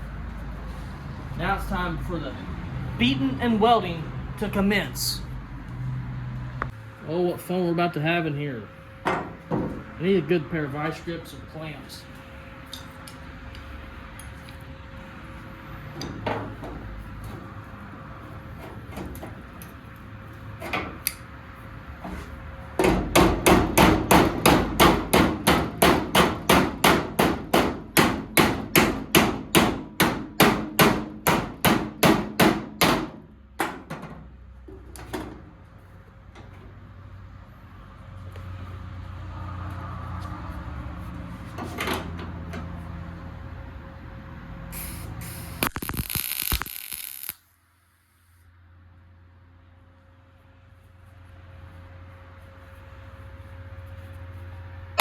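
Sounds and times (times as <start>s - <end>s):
hammer beating sheet steel: 22.8s - 33.9s.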